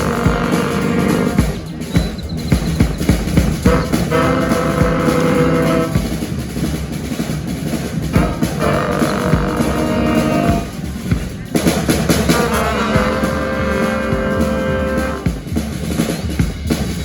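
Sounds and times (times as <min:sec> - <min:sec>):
brass horns holding a chord: 0:00.0 - 0:01.6, 0:03.6 - 0:06.3, 0:08.0 - 0:10.9, 0:12.2 - 0:15.6
drum-kit beat: 0:00.0 - 0:17.0.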